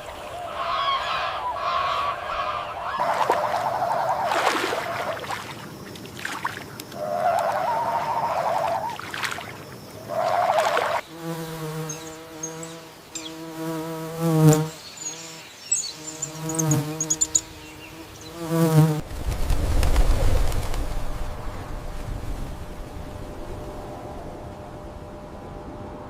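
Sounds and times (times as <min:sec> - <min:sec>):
short wavering calls: 0:00.0 - 0:11.2
flying insect buzzing: 0:03.0 - 0:21.2.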